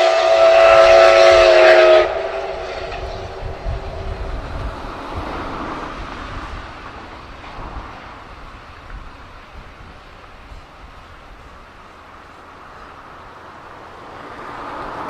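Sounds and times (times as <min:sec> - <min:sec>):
steam whistle: 0:00.0 - 0:04.7
steam train rumble and rail noise: 0:00.0 - 0:15.0.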